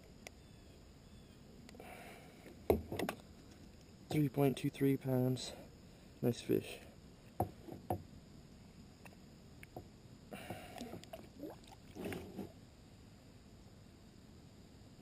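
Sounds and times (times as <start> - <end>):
splashing water: 10.7 - 12.4.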